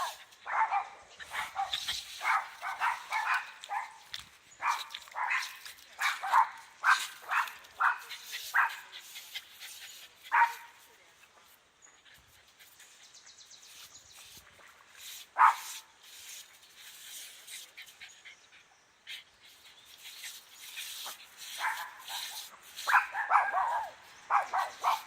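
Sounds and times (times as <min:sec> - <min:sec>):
dog barking: 0:00.0 - 0:04.0, 0:04.6 - 0:08.8, 0:10.3 - 0:10.6, 0:15.4 - 0:15.7, 0:21.6 - 0:25.0.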